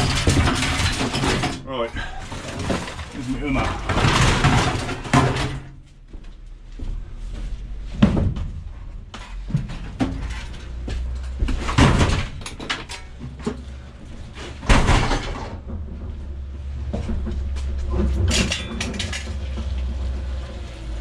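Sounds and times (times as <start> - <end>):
loud bangs and clatters: 0.0 - 1.6, 2.2 - 5.7, 9.4 - 21.0
low steady hum: 0.0 - 21.0.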